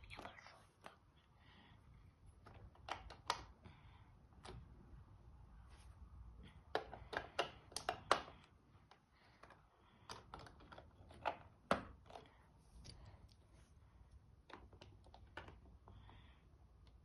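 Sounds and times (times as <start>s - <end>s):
plastic bricks clicking: 6.7s - 8.4s.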